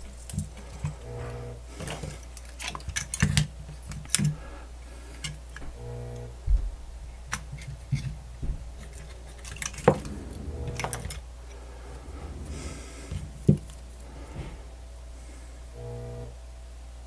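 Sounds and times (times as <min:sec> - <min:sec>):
clicks and knocks of handled parts: 0:00.0 - 0:04.4, 0:05.1 - 0:05.7, 0:07.3 - 0:08.2.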